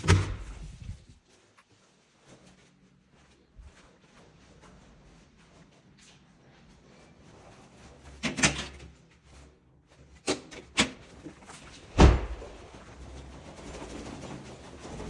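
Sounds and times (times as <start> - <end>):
doors knocking and banging: 0.0 - 1.0, 11.8 - 12.7.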